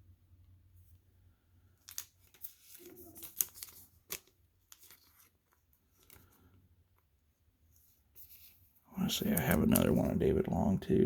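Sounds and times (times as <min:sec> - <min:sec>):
cards rustling: 0:01.8 - 0:06.6, 0:08.2 - 0:10.2.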